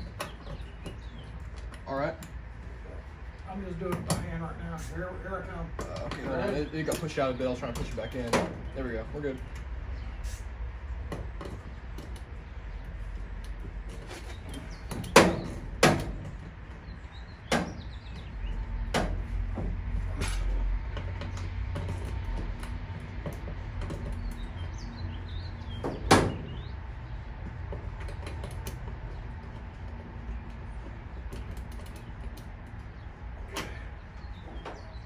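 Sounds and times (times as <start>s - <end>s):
hand tools knocking on metal: 14.0s - 16.5s.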